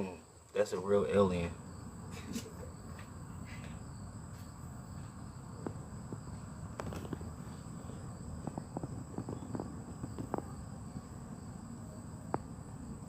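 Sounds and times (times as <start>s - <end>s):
high-pitched insect chorus: 0.0s - 13.0s
small clicks and rustles: 6.8s - 7.6s.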